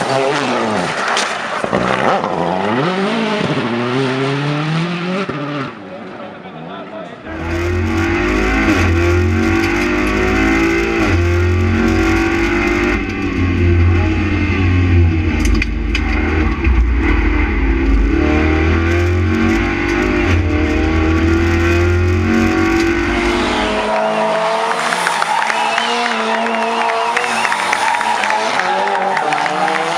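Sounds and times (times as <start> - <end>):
rally car engine revving: 0.0 - 6.1, 7.2 - 29.9
deep rumble: 7.3 - 23.9.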